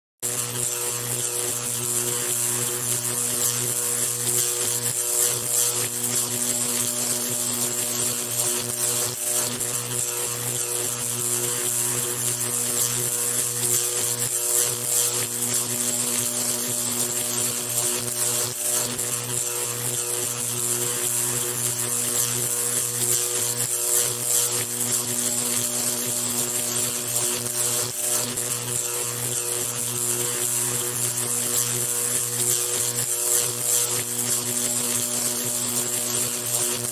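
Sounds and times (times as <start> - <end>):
electric arc crackling: 20.8 - 36.9.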